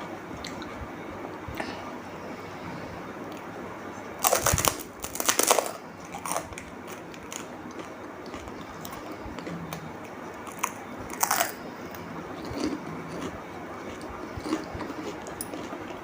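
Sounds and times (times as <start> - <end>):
person crunching fried snack: 4.2 - 9.1, 10.4 - 11.6, 12.4 - 13.3, 13.9 - 16.0.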